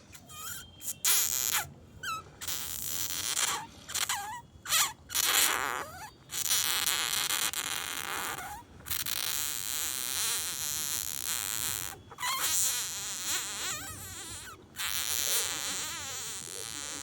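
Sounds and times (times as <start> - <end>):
kittens mewing: 0.1 - 6.5.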